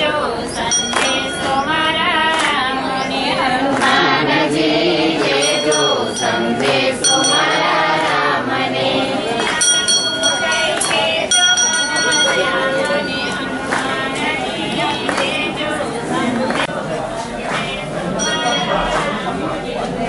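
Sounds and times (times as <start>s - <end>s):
voices singing devotional song: 0.0s - 20.0s.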